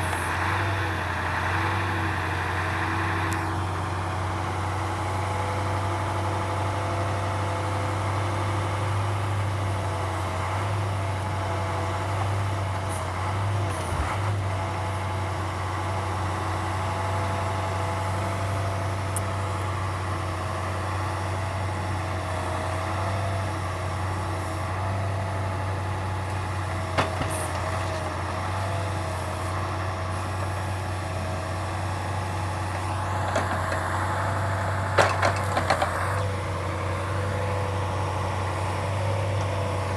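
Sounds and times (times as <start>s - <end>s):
truck engine running: 0.0s - 39.9s
hydraulic crane whine: 12.1s - 39.9s.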